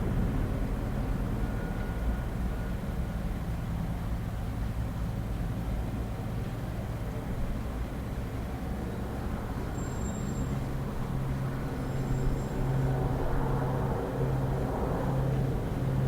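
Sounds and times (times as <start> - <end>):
helicopter rotor drone: 11.2 - 16.0.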